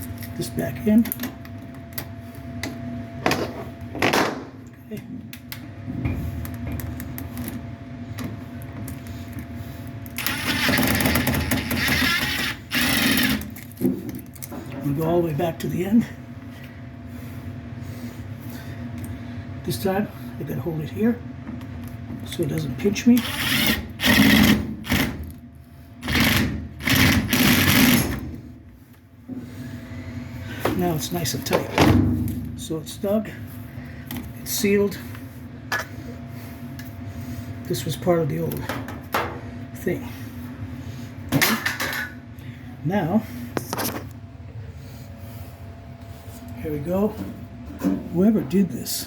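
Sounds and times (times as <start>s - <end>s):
power drill whirring: 10.2s - 13.4s, 23.2s - 25.1s.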